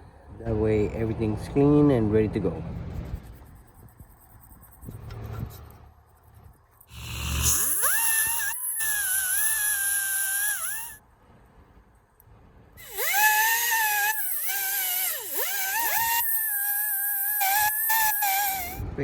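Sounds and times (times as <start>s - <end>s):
rotary tool whining: 2.9s - 11.0s, 12.8s - 18.9s.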